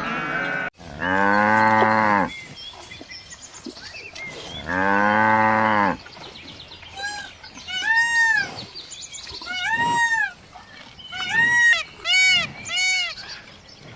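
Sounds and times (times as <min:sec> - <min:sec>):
high-pitched animal calls: 0:00.0 - 0:00.7, 0:07.0 - 0:08.6, 0:09.5 - 0:10.4, 0:11.2 - 0:13.2.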